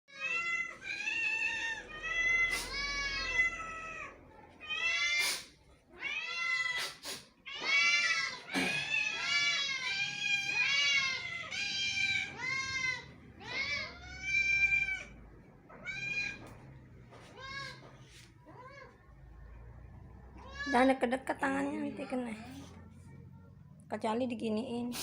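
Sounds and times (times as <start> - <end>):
cats meowing: 0.1 - 19.3, 20.2 - 21.0.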